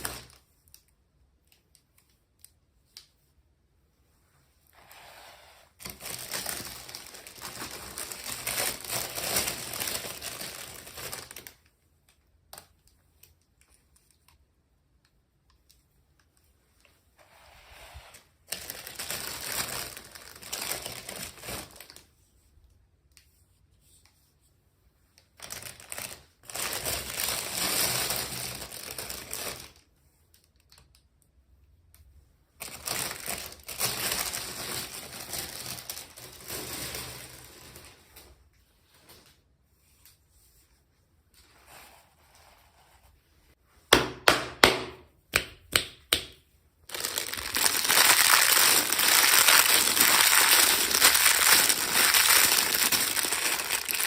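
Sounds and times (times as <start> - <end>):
plastic packaging crinkling: 5.8 - 11.6, 18.4 - 22.0, 25.4 - 29.8, 32.6 - 38.3, 46.9 - 54.0.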